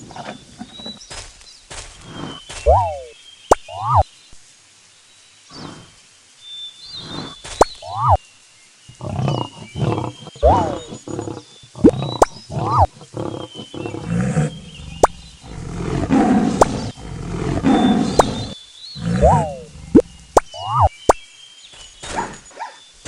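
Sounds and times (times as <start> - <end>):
big cat roaring and growling: 9.0 - 20.0.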